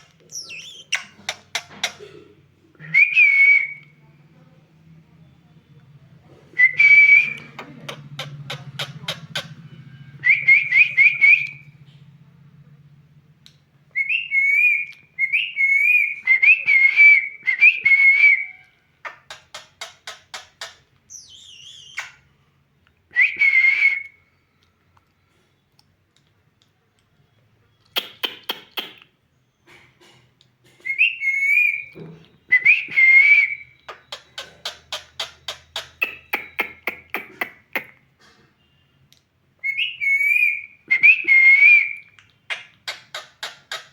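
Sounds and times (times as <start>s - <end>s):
parrot whistling: 0.3s - 1.6s, 21.1s - 22.2s, 39.6s - 43.9s
parrot rapid clicks: 19.1s - 20.8s.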